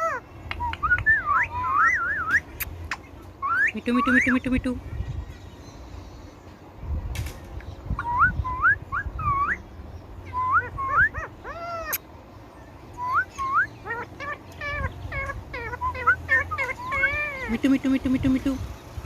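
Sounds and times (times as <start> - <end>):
parrot whistled calls: 0.0 - 2.7, 3.4 - 4.4, 8.0 - 9.6, 10.3 - 12.0, 13.0 - 17.5.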